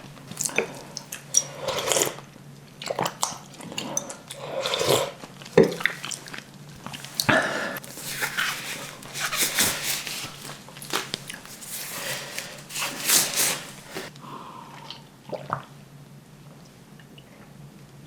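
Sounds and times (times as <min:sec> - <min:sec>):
person chewing food: 0:00.0 - 0:14.2
small mouth sounds: 0:02.8 - 0:14.1.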